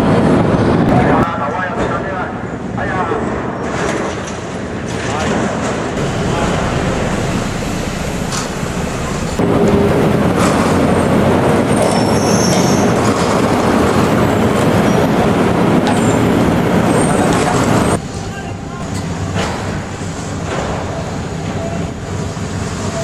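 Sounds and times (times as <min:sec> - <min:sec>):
heavy machinery running: 0:05.8 - 0:23.0.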